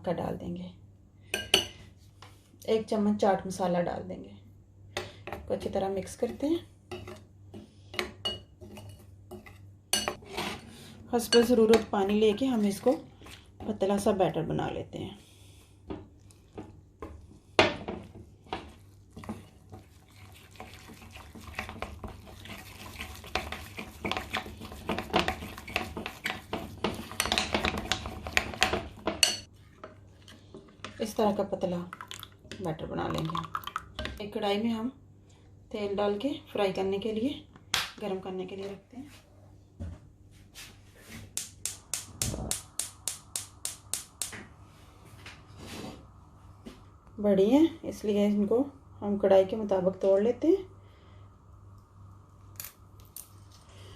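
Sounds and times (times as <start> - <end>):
spoon stirring batter in a bowl: 5.0 - 10.6, 15.8 - 32.8.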